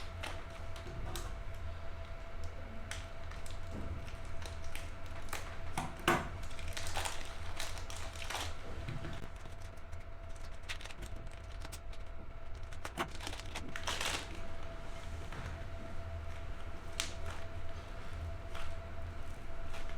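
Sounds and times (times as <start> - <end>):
squishing clicks and crackles: 0.0 - 14.8.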